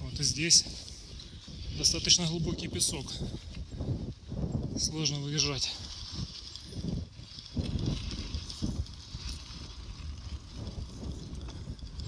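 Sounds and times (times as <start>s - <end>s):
bicycle riding through sand: 0.0s - 12.0s
wind rumbling on microphone: 0.0s - 12.0s.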